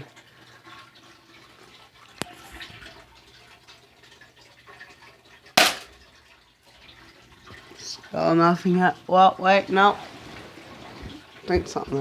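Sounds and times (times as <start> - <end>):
toy gun firing pop: 5.6 - 5.9.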